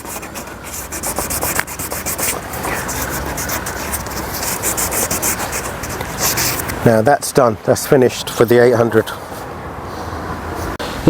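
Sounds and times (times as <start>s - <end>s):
sandpaper rasping on plastic: 0.0s - 6.8s.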